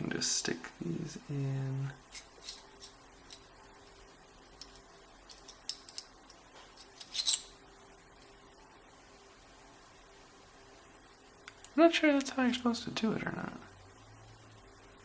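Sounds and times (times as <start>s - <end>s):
lock tools clicking and scraping: 2.1s - 3.5s, 4.6s - 7.5s.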